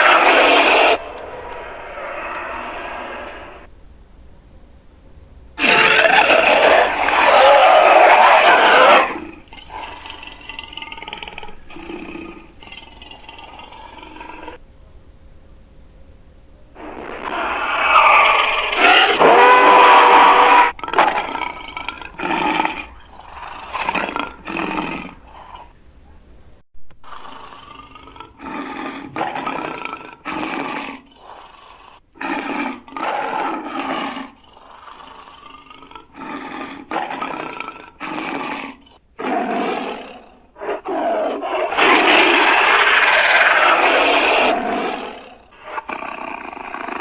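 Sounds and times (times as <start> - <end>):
creature roaring: 0.0 - 3.7, 5.6 - 14.6, 16.8 - 25.7, 27.1 - 47.0
short creature calls: 0.0 - 3.7, 5.6 - 10.0.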